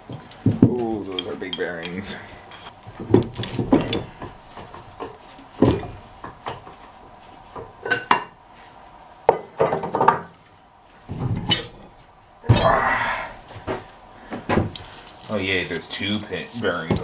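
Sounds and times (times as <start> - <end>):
steel parts clanking: 1.0 - 4.1, 11.4 - 11.9.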